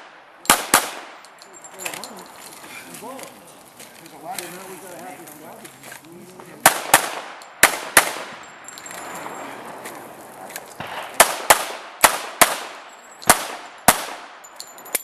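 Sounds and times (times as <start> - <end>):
pistol shots with echo: 0.0 - 1.3, 6.6 - 8.6, 10.8 - 14.4.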